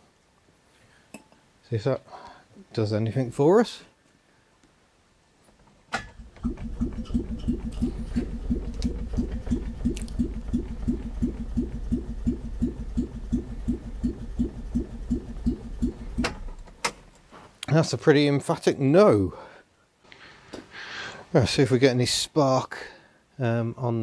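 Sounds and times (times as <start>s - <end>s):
car engine cranking: 6.0s - 17.4s.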